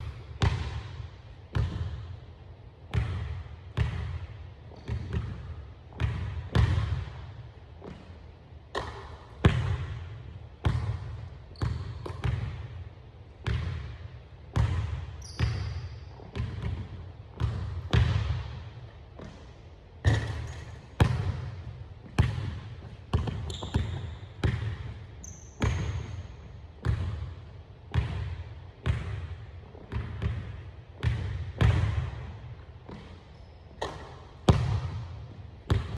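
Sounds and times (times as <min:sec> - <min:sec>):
basketball bouncing on hardwood floor: 0:00.1 - 0:02.1, 0:02.9 - 0:07.2, 0:08.7 - 0:12.7, 0:13.4 - 0:19.4, 0:20.0 - 0:25.0, 0:25.6 - 0:26.2, 0:26.8 - 0:27.3, 0:27.9 - 0:33.2, 0:33.8 - 0:35.9
sneaker squeaks: 0:11.5 - 0:12.2, 0:15.0 - 0:16.6, 0:23.1 - 0:26.5, 0:32.9 - 0:34.2.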